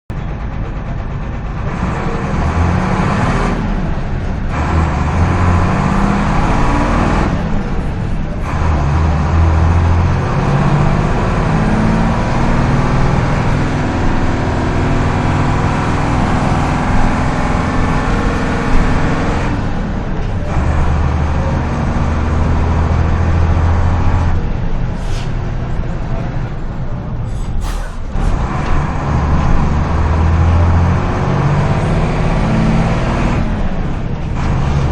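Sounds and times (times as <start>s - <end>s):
bus diesel engine running: 0.1s - 34.9s
short sharp hisses: 25.0s - 25.4s, 27.3s - 28.1s.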